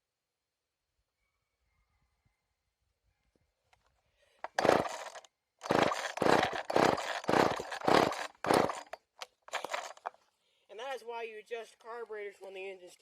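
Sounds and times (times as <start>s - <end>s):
chainsaw starter rope pulls: 4.4s - 10.2s.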